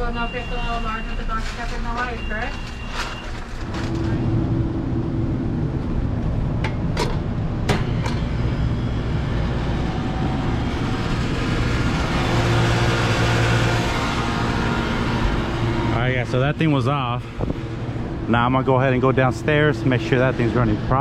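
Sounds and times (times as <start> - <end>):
low mechanical hum: 0.0 - 21.0.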